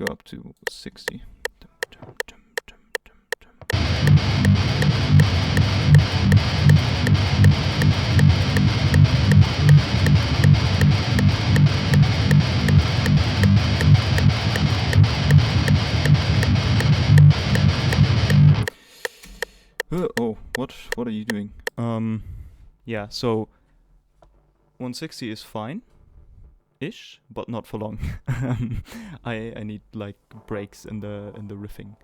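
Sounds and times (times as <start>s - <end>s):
metronome clicking: 3.6s - 20.3s
electric guitar chugging metal riff: 3.7s - 18.7s.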